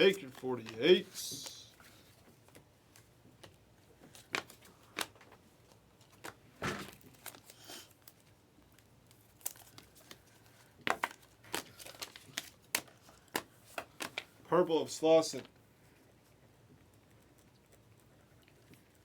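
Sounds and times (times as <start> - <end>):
foil wrappers crinkling: 6.0 - 14.3.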